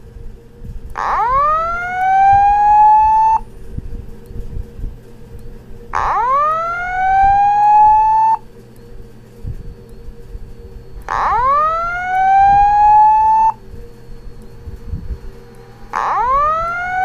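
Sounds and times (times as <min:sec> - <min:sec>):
fire alarm rising whoops: 0:01.0 - 0:03.5, 0:06.0 - 0:08.4, 0:11.0 - 0:13.7, 0:15.5 - 0:17.0.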